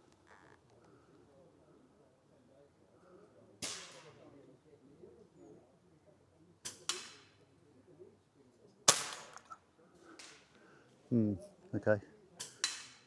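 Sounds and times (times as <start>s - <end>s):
air rifle shot: 8.9s - 9.4s.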